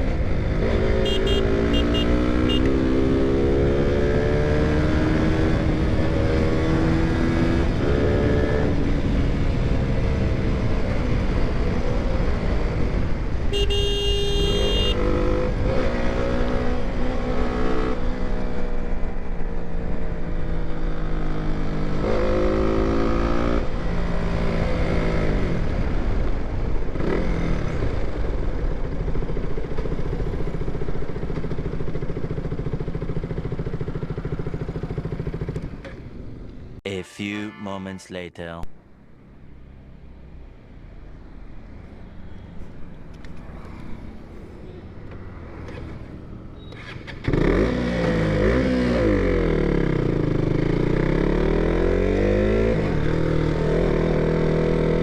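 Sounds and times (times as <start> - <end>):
wind and road noise: 0.0 - 36.8, 38.8 - 55.0
horn sounding: 1.0 - 2.8, 13.5 - 15.0, 36.9 - 38.7.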